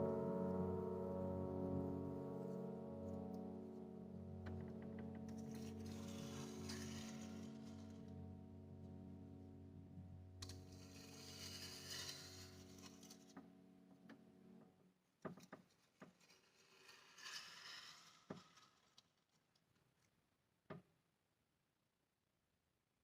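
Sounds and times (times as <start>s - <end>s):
piano strings ringing: 0.0s - 14.6s.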